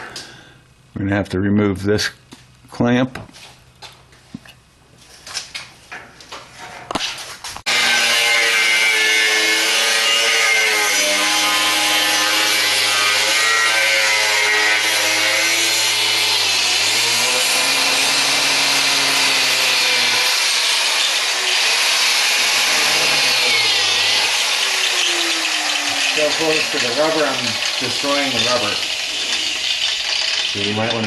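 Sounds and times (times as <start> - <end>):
power cutting tool cutting metal: 7.7 - 31.0.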